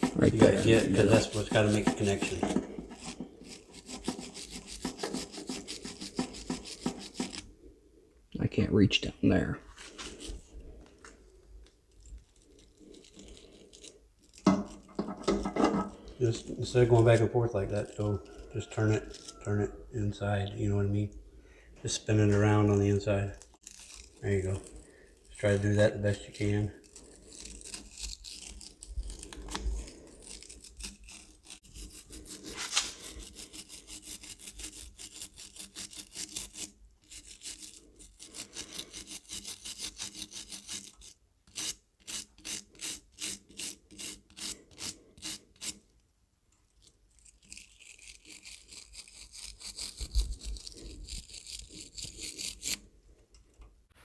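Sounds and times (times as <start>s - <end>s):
metal-on-metal scraping: 0.0s - 7.5s, 11.9s - 21.0s, 21.8s - 36.5s.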